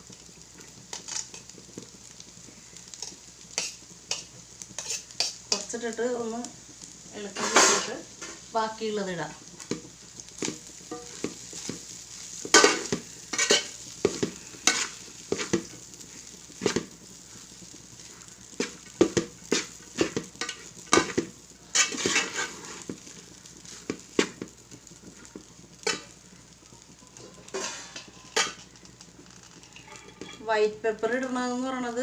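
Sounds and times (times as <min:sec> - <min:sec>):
faint sizzle: 0:00.0 - 0:32.0
spatula scraping frying pan: 0:00.9 - 0:02.2, 0:02.9 - 0:05.8, 0:07.2 - 0:08.5, 0:09.6 - 0:26.2, 0:27.1 - 0:30.5.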